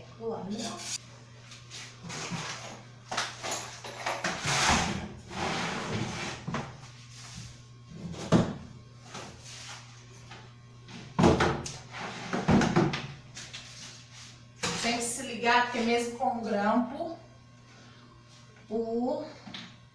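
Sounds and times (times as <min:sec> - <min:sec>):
wood scraping on workbench: 0:04.3 - 0:06.7.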